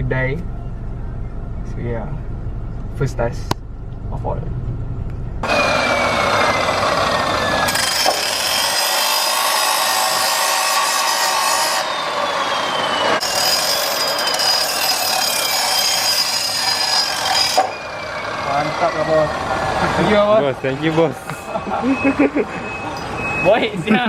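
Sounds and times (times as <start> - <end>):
power tool grinding through metal: 5.4 - 20.2.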